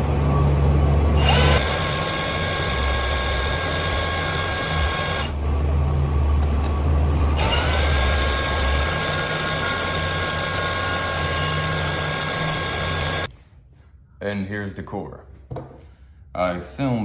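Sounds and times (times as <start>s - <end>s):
power tool motor whine: 1.2s - 13.3s.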